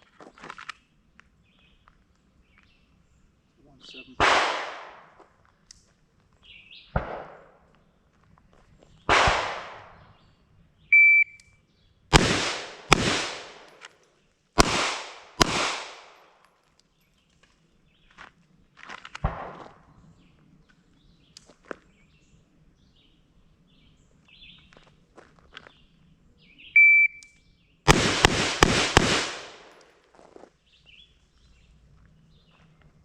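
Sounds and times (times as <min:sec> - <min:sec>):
gunshots with echo: 0:04.2 - 0:05.2, 0:07.0 - 0:07.5, 0:09.1 - 0:10.0, 0:12.1 - 0:13.8, 0:14.6 - 0:16.4, 0:27.9 - 0:29.9
high beep: 0:11.0 - 0:11.4, 0:26.8 - 0:27.3.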